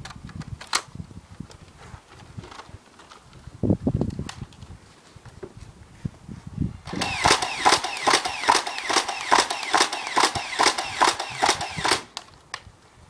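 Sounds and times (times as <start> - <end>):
toy blaster firing clacks: 6.9 - 12.3.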